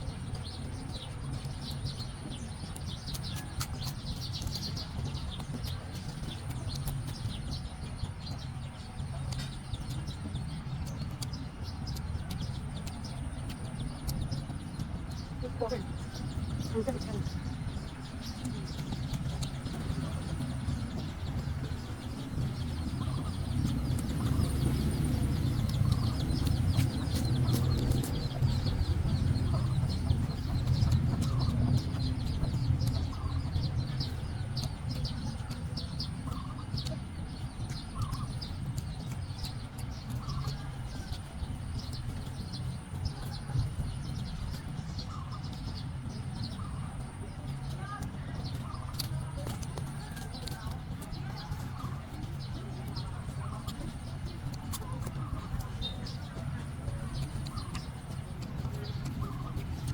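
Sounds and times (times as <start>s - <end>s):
small birds calling: 0.0s - 59.9s
chickens calling: 9.1s - 45.6s, 47.9s - 59.9s.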